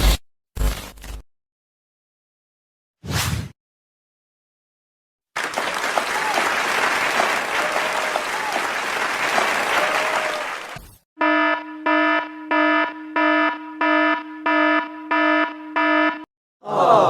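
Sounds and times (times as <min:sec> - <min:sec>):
crowd applause: 0:05.4 - 0:10.9.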